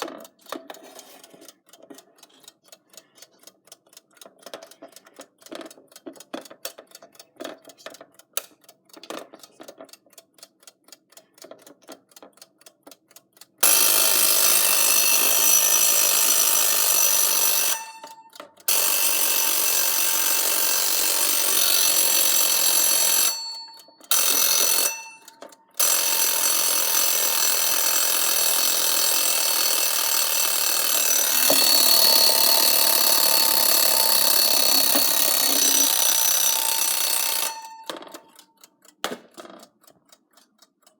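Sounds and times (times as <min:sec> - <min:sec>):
alarm clock ticking: 0:00.0 - 0:40.9
alarm bell ringing: 0:13.6 - 0:38.2.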